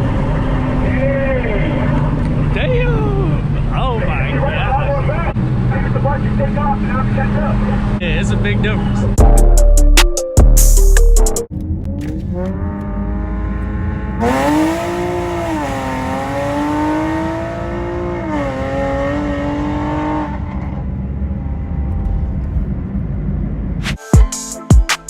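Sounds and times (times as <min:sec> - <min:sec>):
car engine accelerating: 0:00.0 - 0:09.2, 0:11.5 - 0:23.9
music with a beat: 0:09.2 - 0:11.5, 0:23.9 - 0:25.0.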